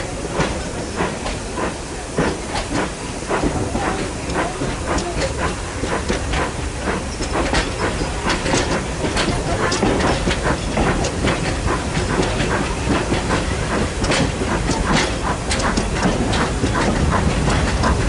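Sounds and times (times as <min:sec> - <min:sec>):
train rumbling: 0:00.0 - 0:18.0
wheels clicking and knocking: 0:00.4 - 0:18.0.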